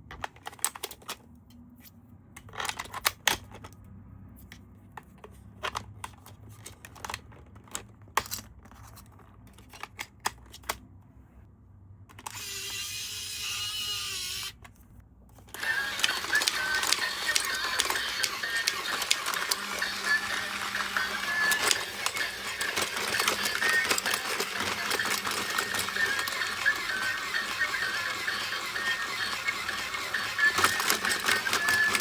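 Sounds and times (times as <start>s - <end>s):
battery toy rattling and whining: 12.3s - 14.5s, 15.5s - 32.0s
plastic toy clicks and taps: 15.6s - 32.0s.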